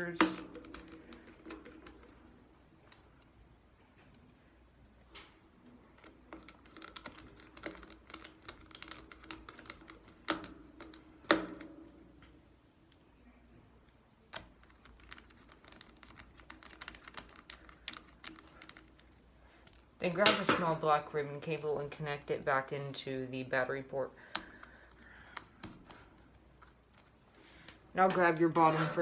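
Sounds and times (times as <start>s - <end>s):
plastic and metal parts tapping: 0.0s - 2.2s, 6.0s - 11.8s.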